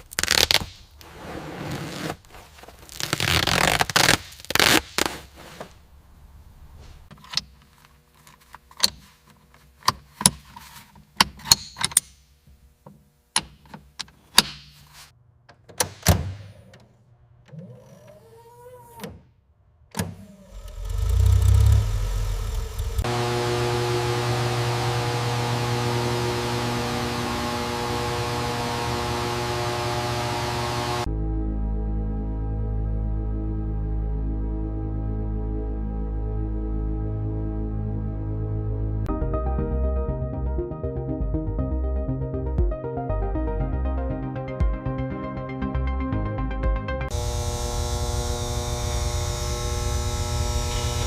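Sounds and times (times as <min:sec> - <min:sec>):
wavering squeak: 0:17.5 - 0:19.2
low rumble: 0:20.5 - 0:23.1.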